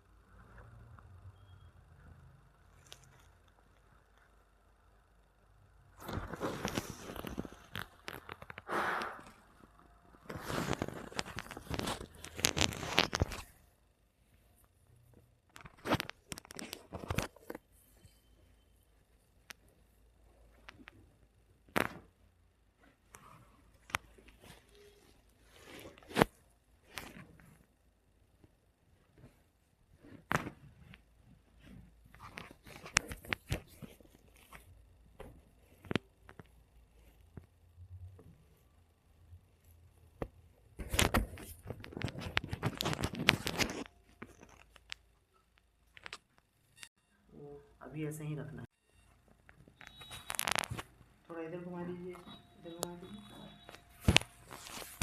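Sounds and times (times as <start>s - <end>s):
rustling and crackling handling: 6.0s - 8.6s, 9.3s - 13.6s, 14.2s - 18.2s, 19.1s - 27.8s, 28.4s - 37.6s, 39.6s - 46.5s, 49.3s - 51.1s, 52.2s - 55.0s.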